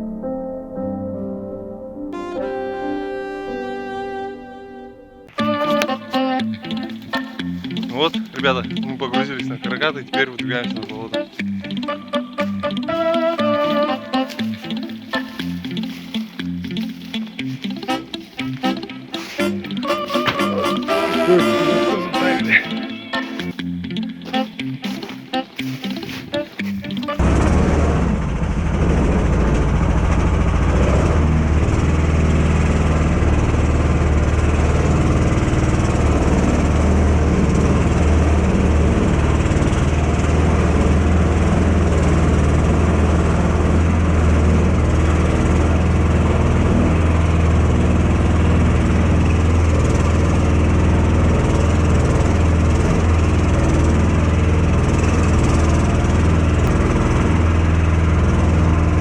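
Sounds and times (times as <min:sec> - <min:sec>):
vehicle engine low hum: 0:27.2 - 0:59.0.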